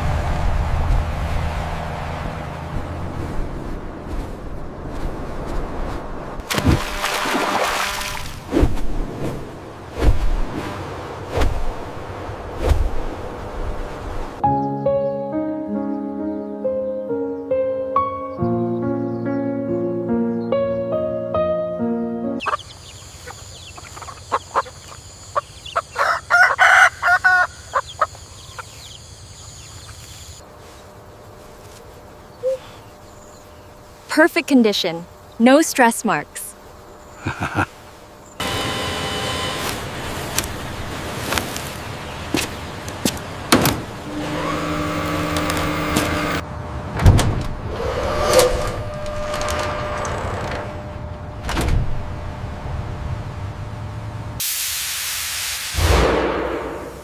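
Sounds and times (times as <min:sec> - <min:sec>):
sharp bird calls: 0:22.4 - 0:30.4
motor hum: 0:36.6 - 0:54.4.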